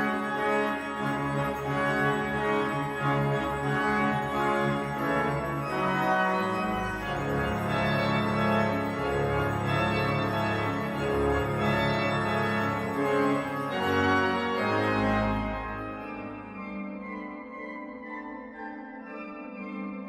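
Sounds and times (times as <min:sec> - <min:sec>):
organ duet music: 0:00.0 - 0:18.2.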